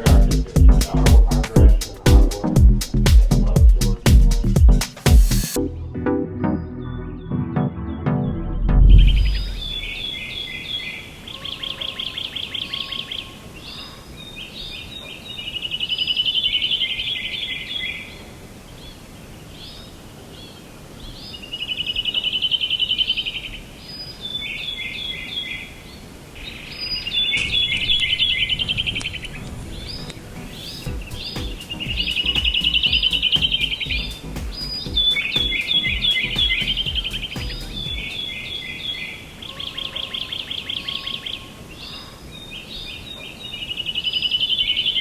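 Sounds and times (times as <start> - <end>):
bird trilling: 9.0 - 14.1, 26.8 - 42.2.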